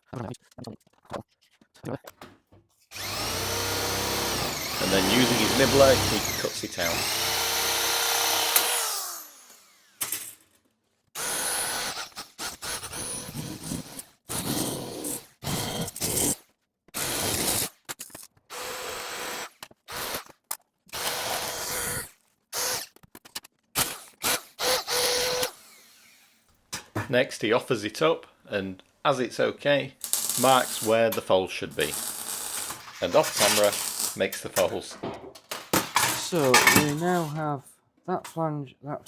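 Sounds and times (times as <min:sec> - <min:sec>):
power nibbler cutting sheet steel: 0:03.0 - 0:10.4, 0:11.2 - 0:16.4, 0:23.8 - 0:26.4, 0:30.0 - 0:35.0, 0:35.6 - 0:37.4.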